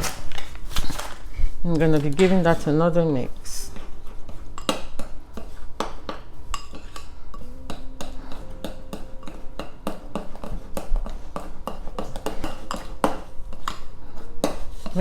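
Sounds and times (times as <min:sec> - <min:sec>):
utensil stirring batter in bowl: 0:03.6 - 0:07.2.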